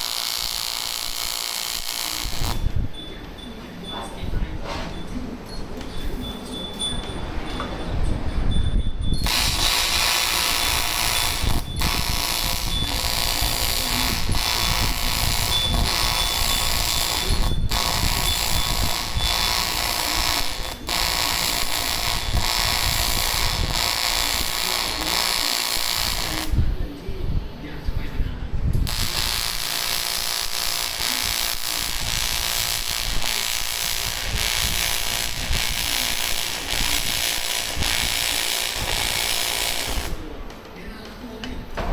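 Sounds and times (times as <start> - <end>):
welding arc buzzing: 0.0 - 2.9, 9.2 - 26.7, 28.8 - 40.3.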